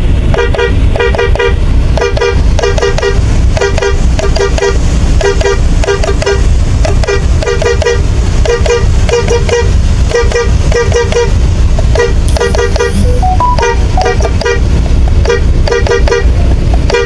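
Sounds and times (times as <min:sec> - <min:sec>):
steady low rumble: 0:00.0 - 0:16.9
bus horn short toots: 0:00.3 - 0:17.0.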